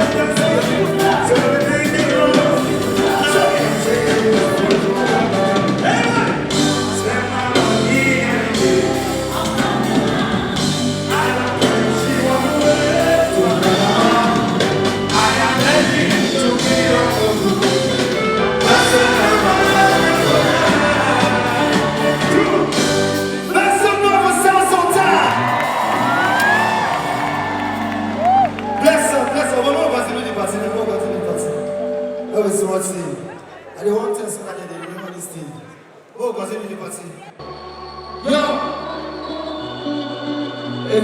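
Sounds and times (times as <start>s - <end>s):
person singing: 0.0s - 24.3s, 37.4s - 41.0s
band playing live: 0.0s - 33.5s.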